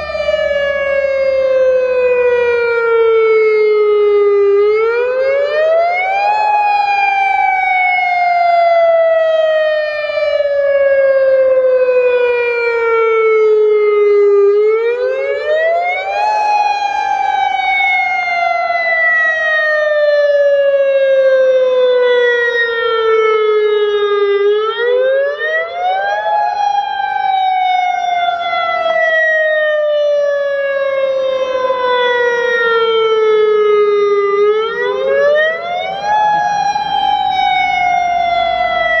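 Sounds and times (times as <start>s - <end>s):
warning siren wailing: 0.0s - 39.0s.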